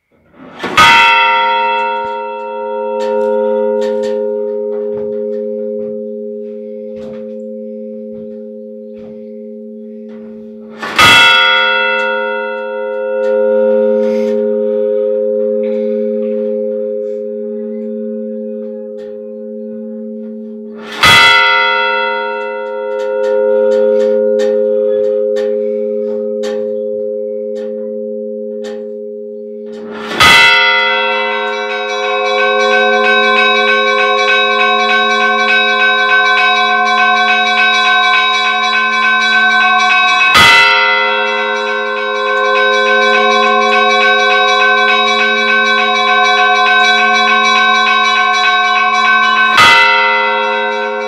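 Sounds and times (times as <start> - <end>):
large church bell striking: 0.0 - 51.0
small bells chiming rapidly: 28.6 - 51.0.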